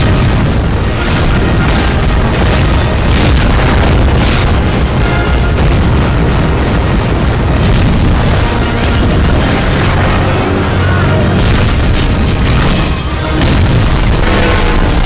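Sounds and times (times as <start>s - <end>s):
booming explosions: 0.0s - 15.0s
low rumble: 0.0s - 15.0s
orchestral film score: 0.0s - 15.0s.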